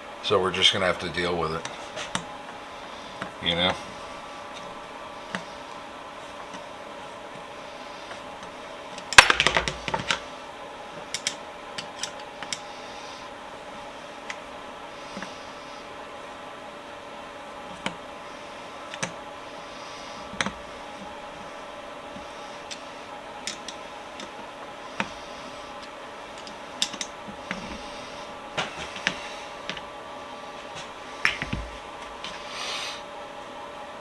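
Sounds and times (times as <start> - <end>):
steady hum: 0.0 - 34.0
tools clicking and tapping: 11.0 - 12.7, 22.2 - 22.8, 23.4 - 24.4, 25.8 - 27.8.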